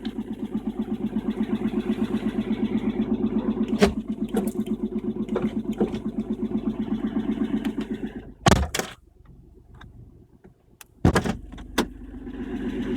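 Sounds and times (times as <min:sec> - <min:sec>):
car engine idling with rattle: 0:00.0 - 0:12.9
sharp engine knocks: 0:03.4 - 0:06.4, 0:07.6 - 0:09.0, 0:11.0 - 0:12.0.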